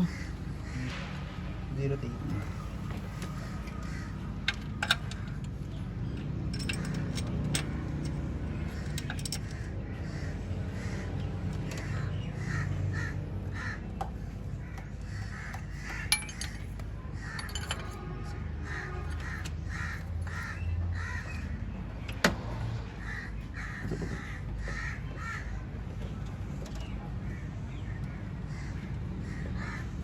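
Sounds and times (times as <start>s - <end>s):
crows cawing: 0.0s - 1.4s, 2.4s - 4.6s, 8.8s - 16.6s, 17.2s - 17.7s, 18.6s - 21.8s, 23.0s - 25.7s, 27.3s - 30.0s
metallic clinks of tools: 16.1s - 16.7s, 17.4s - 18.0s.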